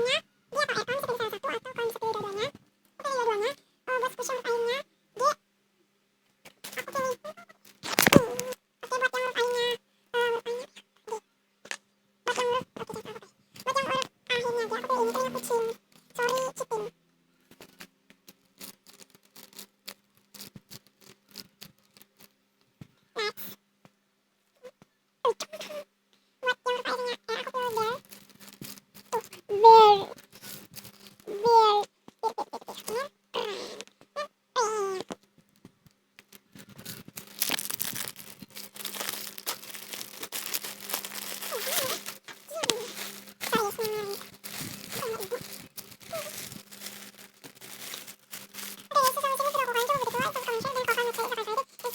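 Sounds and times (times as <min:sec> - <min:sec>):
plastic packaging crinkling: 0:06.6 - 0:09.6, 0:18.4 - 0:22.3, 0:27.6 - 0:31.4, 0:36.2 - 0:51.9.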